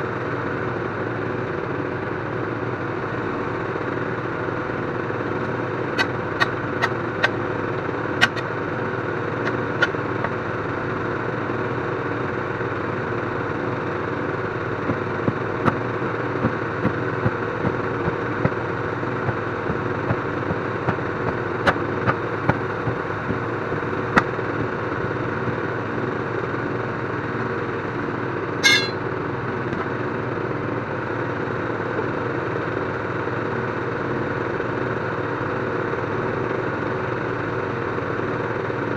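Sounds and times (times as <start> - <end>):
engine idling: 0.0 - 38.9
short higher-pitched burst: 28.6 - 29.0.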